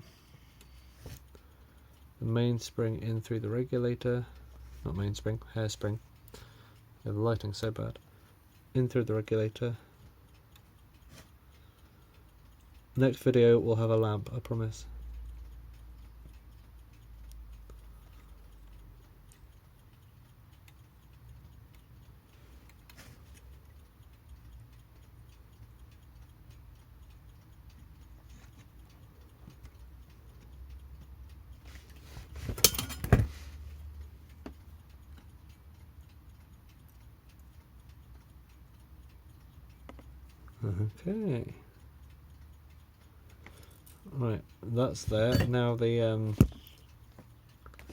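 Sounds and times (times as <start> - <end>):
mechanical clock ticking: 0.0 - 47.9
tools clicking on metal parts: 32.4 - 33.3.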